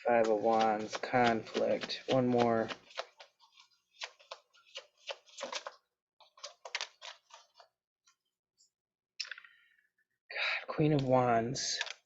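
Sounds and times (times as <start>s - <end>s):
cards being shuffled: 0.0s - 7.7s.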